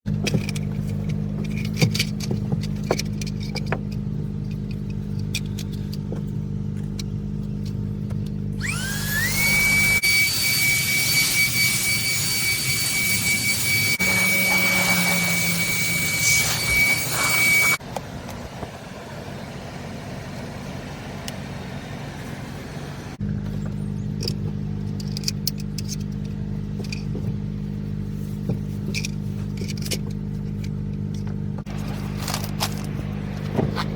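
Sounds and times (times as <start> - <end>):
steady low hum: 0.1 - 10.2, 10.8 - 33.9
handheld vacuum motor whining: 8.5 - 17.8.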